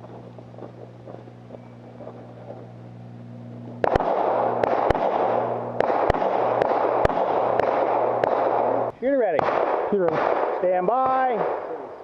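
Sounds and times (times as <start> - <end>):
pistol shots: 3.6 - 12.0.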